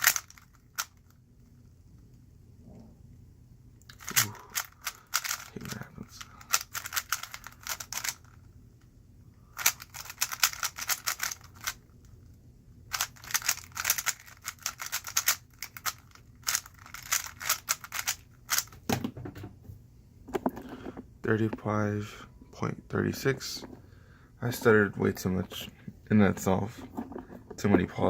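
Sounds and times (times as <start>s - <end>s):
speed cube clicking: 0.0s - 1.1s, 3.9s - 5.5s, 6.2s - 8.4s, 9.6s - 11.8s, 12.9s - 18.8s.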